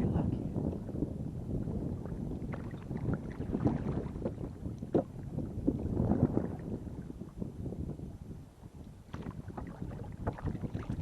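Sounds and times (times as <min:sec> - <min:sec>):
wind buffeting microphone: 0:00.0 - 0:11.0
water splashing against canoe: 0:01.7 - 0:07.4, 0:08.8 - 0:11.0.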